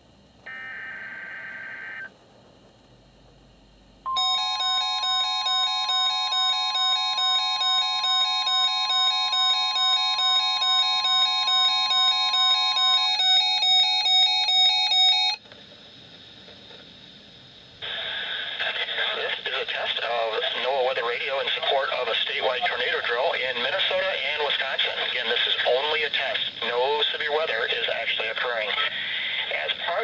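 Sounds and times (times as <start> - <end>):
steady warning alarm tone: 0.0 - 2.1, 4.0 - 15.4
rapid alarm beeps: 4.1 - 15.4.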